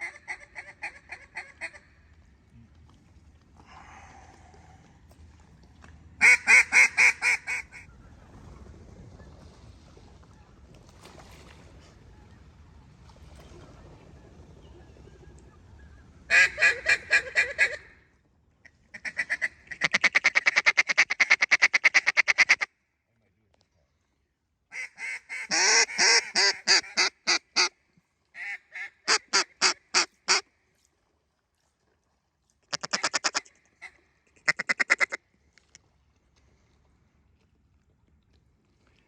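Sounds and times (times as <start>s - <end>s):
duck call quacks: 0.0s - 1.8s, 6.2s - 7.8s, 16.3s - 17.9s, 19.0s - 22.7s, 24.7s - 27.7s, 28.4s - 30.5s, 32.7s - 35.2s.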